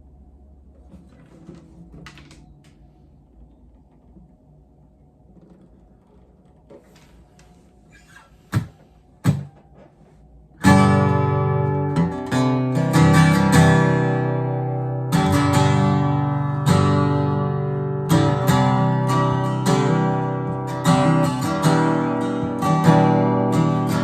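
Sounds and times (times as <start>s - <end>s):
acoustic guitar chords strummed: 8.5s - 24.0s.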